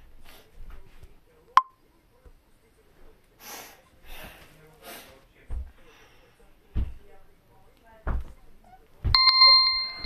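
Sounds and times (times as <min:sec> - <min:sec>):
breathy sniffs: 0:03.4 - 0:05.2.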